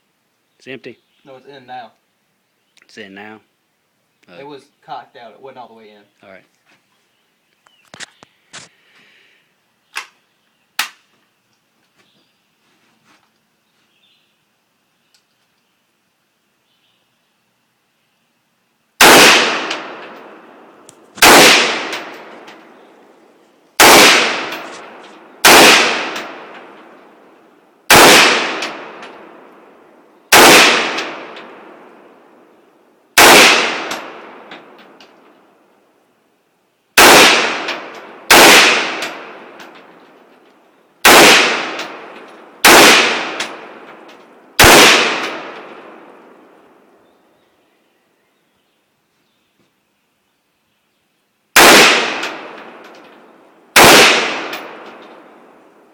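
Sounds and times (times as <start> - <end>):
rifle shots with long echo: 19.0 - 32.6, 33.2 - 35.2, 37.0 - 40.0, 41.0 - 47.0, 51.6 - 55.9.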